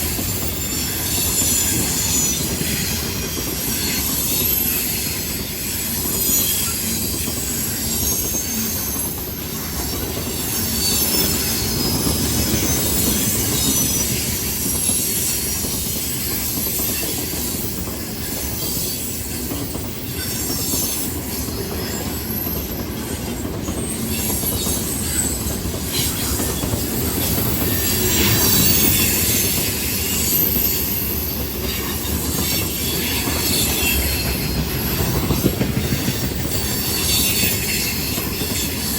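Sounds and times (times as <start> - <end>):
train wheels rumbling on rails: 0.0 - 38.9
wheel flanges squealing: 0.1 - 38.9.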